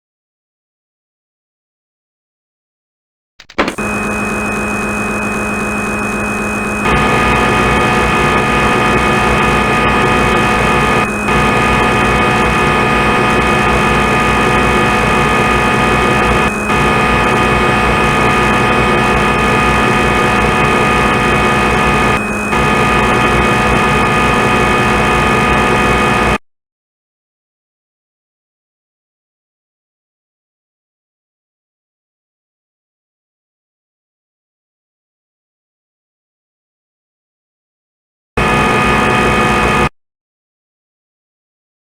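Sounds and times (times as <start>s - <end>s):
simulated machine hum: 3.4s - 26.4s, 38.4s - 39.9s.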